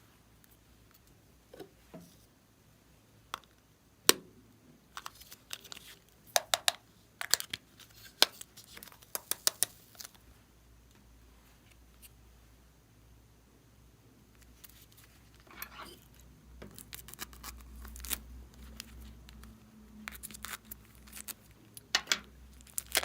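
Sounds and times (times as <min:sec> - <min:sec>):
slime clicking and crackling: 0:20.1 - 0:23.0.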